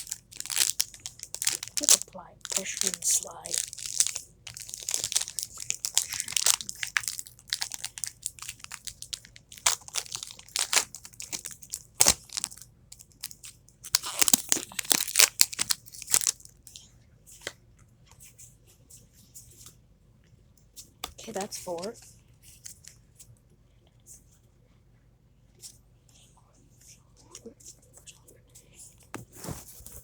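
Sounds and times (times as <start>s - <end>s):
foil wrapper crinkling and tearing: 0.0s - 16.5s.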